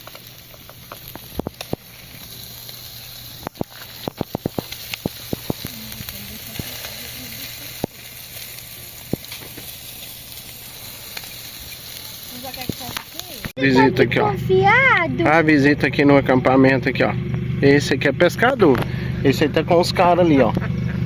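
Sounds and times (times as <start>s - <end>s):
campfire crackling and popping: 0.0s - 15.6s, 18.4s - 19.3s.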